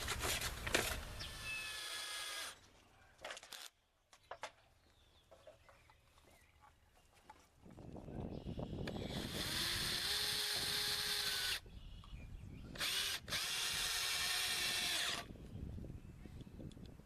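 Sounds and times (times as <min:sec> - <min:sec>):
power drill whining: 0:01.2 - 0:02.6, 0:08.8 - 0:11.6, 0:12.7 - 0:15.3.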